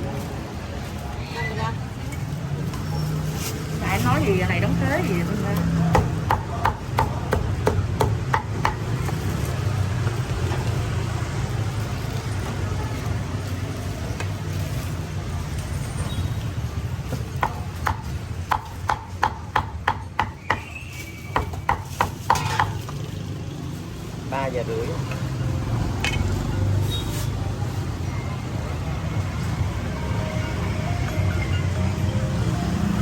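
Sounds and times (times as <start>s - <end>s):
cleaver chopping meat: 5.6s - 9.4s, 17.2s - 22.8s.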